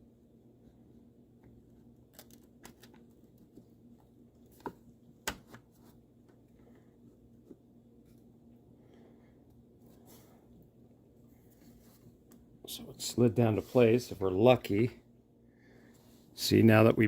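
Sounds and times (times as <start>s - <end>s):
low steady hum: 0.0s - 17.0s.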